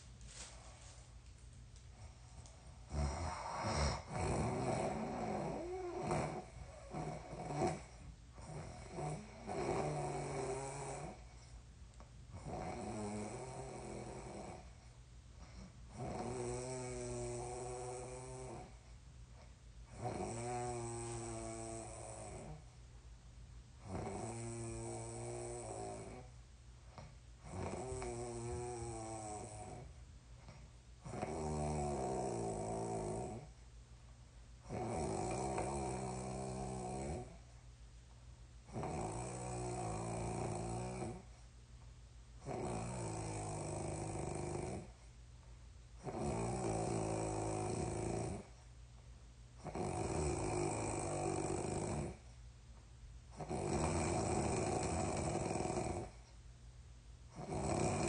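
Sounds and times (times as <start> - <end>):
person snoring: 2.8 - 11.2, 12.4 - 14.7, 15.5 - 18.8, 19.9 - 22.6, 23.8 - 26.3, 27.4 - 29.9, 31.1 - 33.5, 34.7 - 37.4, 38.7 - 41.3, 42.4 - 44.9, 46.0 - 48.5, 49.6 - 52.2, 53.4 - 56.2, 57.4 - 58.0.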